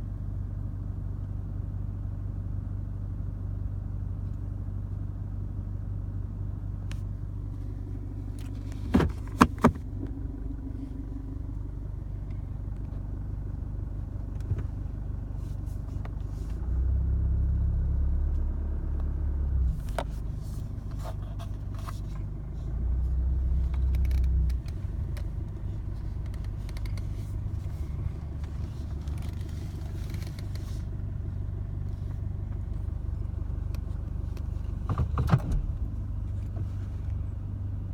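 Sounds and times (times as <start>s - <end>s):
diesel engine idling roughly: 6.2s - 16.7s, 19.8s - 34.9s.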